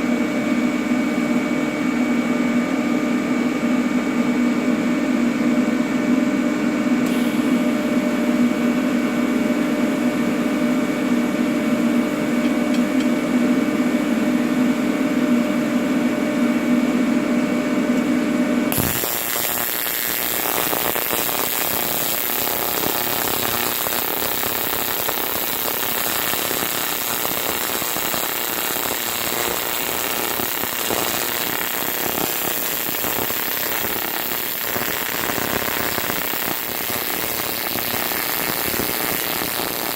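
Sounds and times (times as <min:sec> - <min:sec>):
welding arc buzzing: 0:18.7 - 0:39.9
harsh crackling hiss: 0:18.8 - 0:39.9.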